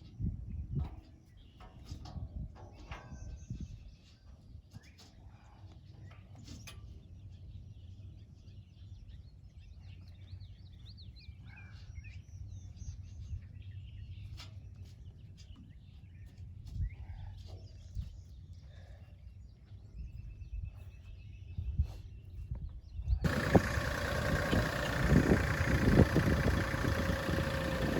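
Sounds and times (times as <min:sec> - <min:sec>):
songbirds chirping: 0:00.0 - 0:27.9
low rumble: 0:23.2 - 0:27.9.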